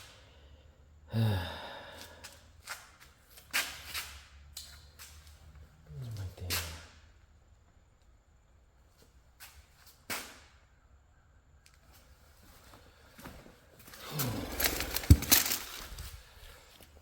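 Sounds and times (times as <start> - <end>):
tools clattering and knocking: 14.5 - 16.1.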